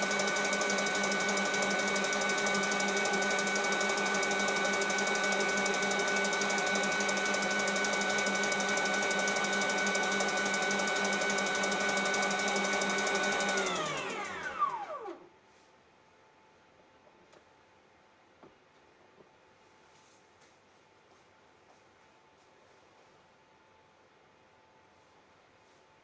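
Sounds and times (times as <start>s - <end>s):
electric mixer whine: 0.0s - 15.3s.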